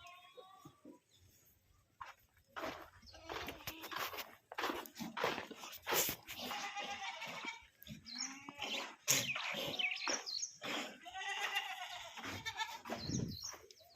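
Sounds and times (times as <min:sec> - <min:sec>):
goats bleating: 0:00.0 - 0:00.9, 0:03.1 - 0:04.2, 0:06.1 - 0:09.5, 0:10.6 - 0:13.2
small birds chirping: 0:00.0 - 0:13.9.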